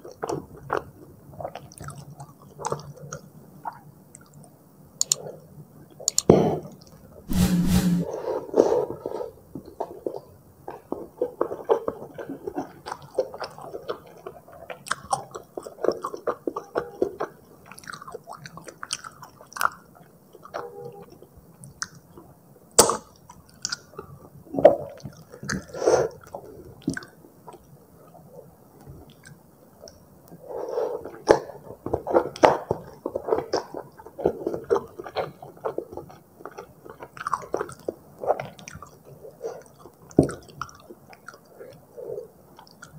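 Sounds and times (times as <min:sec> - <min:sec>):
wet chewing sounds: 0:10.7 - 0:20.6, 0:23.1 - 0:42.9.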